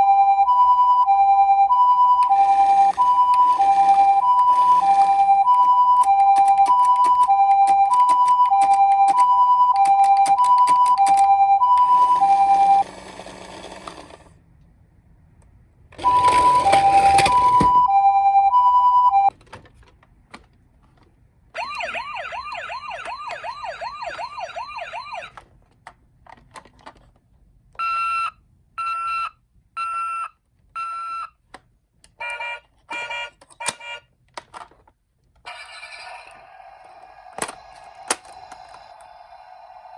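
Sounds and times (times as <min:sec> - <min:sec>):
two-tone toy siren: 0:00.0 - 0:13.1, 0:16.0 - 0:19.3, 0:21.6 - 0:25.4, 0:32.2 - 0:34.0, 0:35.4 - 0:39.9
fast warbling siren wail: 0:21.6 - 0:25.3, 0:35.5 - 0:39.9.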